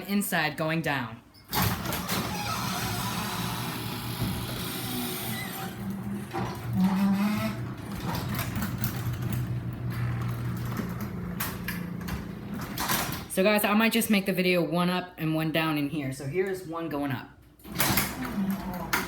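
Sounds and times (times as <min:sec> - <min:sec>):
garage door opener motor hum: 0:01.4 - 0:13.3.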